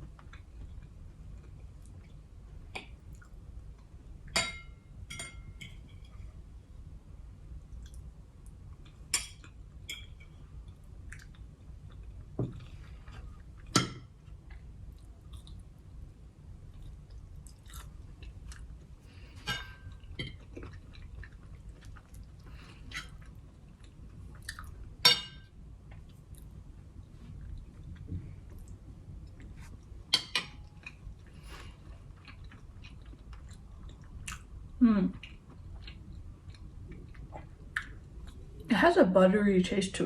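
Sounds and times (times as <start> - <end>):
person chewing food: 8.8 - 16.0, 16.6 - 25.0, 25.8 - 38.7.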